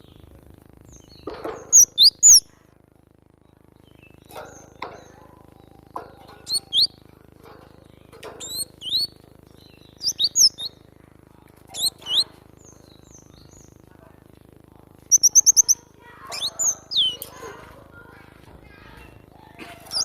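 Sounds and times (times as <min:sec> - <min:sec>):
bird singing high chirps: 0:00.9 - 0:02.5, 0:03.8 - 0:07.0, 0:08.3 - 0:10.8, 0:11.7 - 0:13.8, 0:15.1 - 0:17.3.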